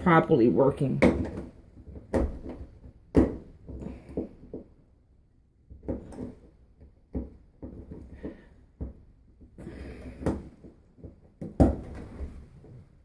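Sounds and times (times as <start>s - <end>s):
clunks and knocks of parts: 5.6s - 12.9s.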